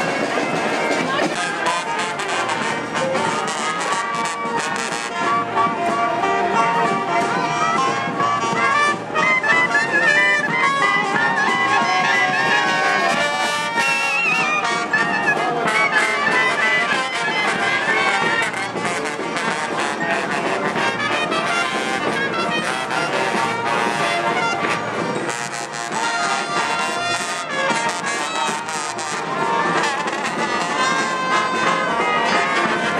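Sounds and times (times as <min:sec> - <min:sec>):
drums: 0:00.0 - 0:32.9
horns playing melody: 0:00.0 - 0:32.9.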